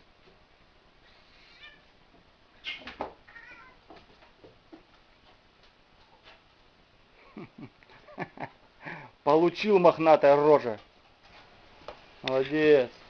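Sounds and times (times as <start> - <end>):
cats yowling: 1.0 - 1.9, 3.3 - 3.8.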